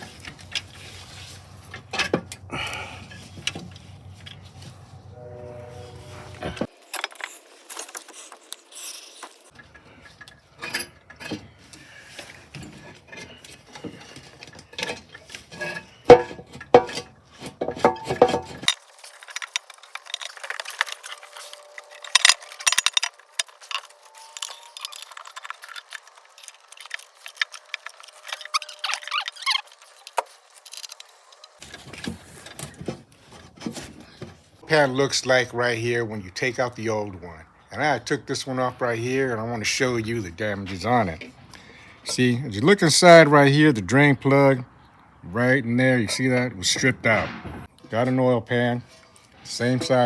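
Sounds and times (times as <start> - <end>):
metallic clinks and rattles: 6.6 - 31.6.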